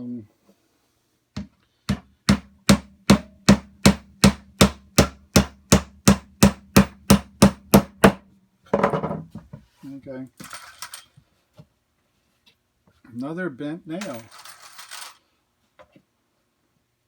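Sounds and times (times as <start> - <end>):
hammer striking nail into wood: 1.4 - 8.2.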